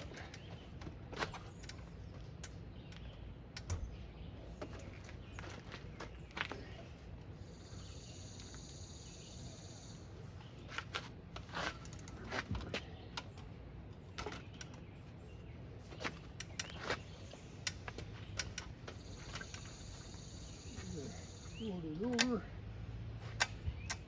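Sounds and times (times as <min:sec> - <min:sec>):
bike handling clicks and knocks: 0:10.6 - 0:15.0, 0:15.9 - 0:19.9, 0:23.2 - 0:24.0.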